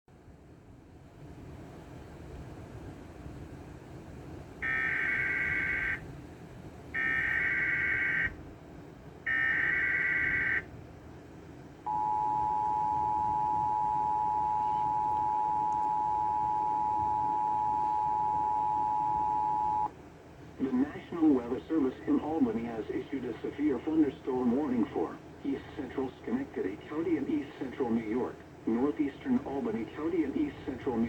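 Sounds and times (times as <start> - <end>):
two-tone attention signal: 11.9 - 19.9.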